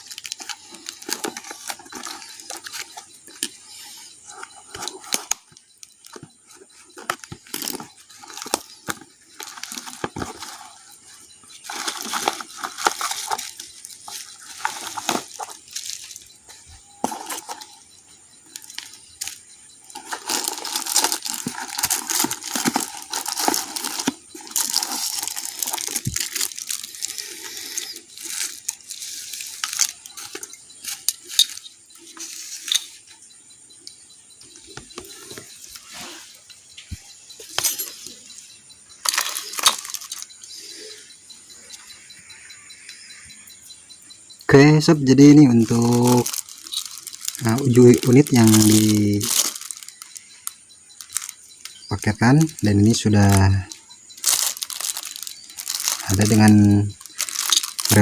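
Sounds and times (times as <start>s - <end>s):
packaging crinkling and rustling: 0.0s - 17.8s, 18.5s - 32.8s, 39.0s - 40.4s, 45.2s - 53.4s, 54.2s - 58.0s.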